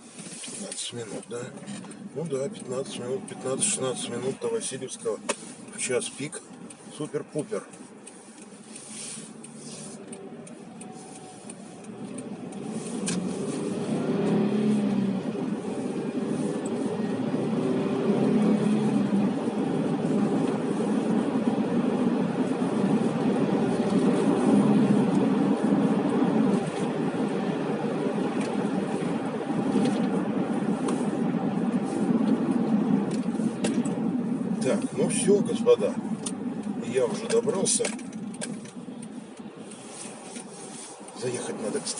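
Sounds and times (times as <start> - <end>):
car engine and road noise: 0.0 - 41.9.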